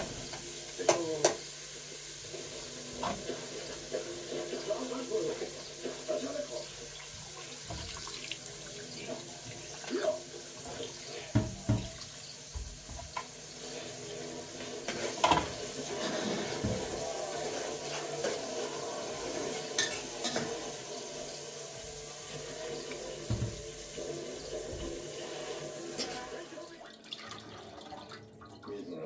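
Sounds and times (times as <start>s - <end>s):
running water: 0.0s - 29.0s
dishes clinking and knocking: 2.9s - 3.4s, 10.6s - 13.3s, 14.9s - 17.1s, 19.6s - 20.8s, 22.4s - 24.0s.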